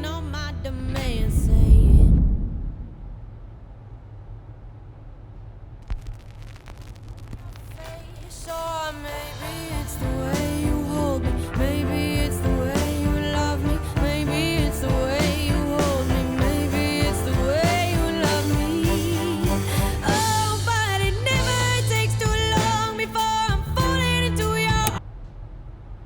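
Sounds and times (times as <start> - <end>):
music with singing over a beat: 7.7 - 25.0.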